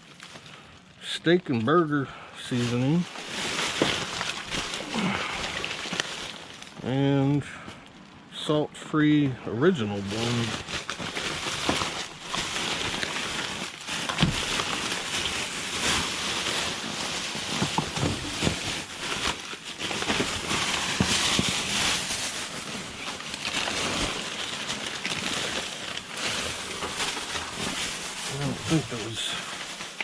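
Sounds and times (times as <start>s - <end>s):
plastic bags rustling and crinkling: 0.0s - 8.2s, 9.6s - 30.0s
steady hiss: 27.0s - 30.0s.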